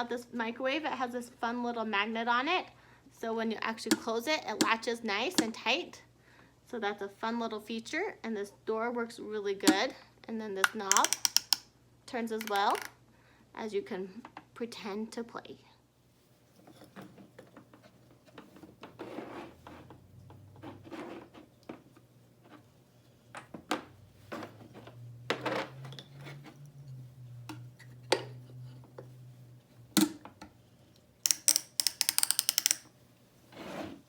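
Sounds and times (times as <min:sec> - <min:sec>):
toy dial clicking as wound: 0:10.9 - 0:11.7, 0:31.2 - 0:32.9.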